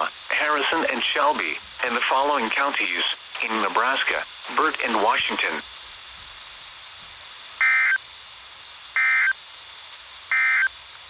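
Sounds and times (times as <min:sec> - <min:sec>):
radio static hiss: 0:00.0 - 0:11.0
two-tone digital data bursts: 0:07.6 - 0:08.0, 0:09.0 - 0:09.4, 0:10.3 - 0:10.7.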